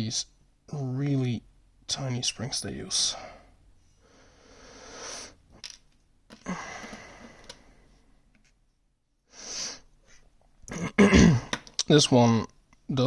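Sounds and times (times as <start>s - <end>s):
person breathing: 3.0s - 5.4s, 6.4s - 8.2s, 9.3s - 10.3s.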